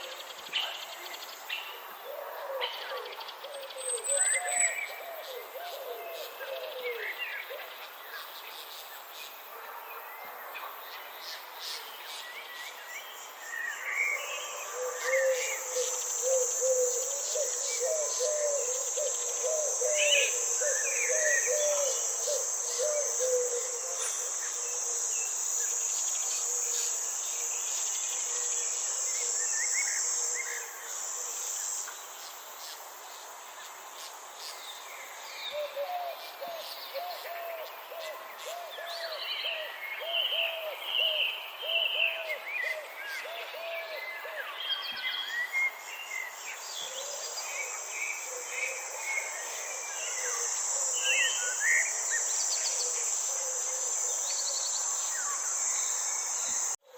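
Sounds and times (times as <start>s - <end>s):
insect trilling: 14.7s - 32.0s.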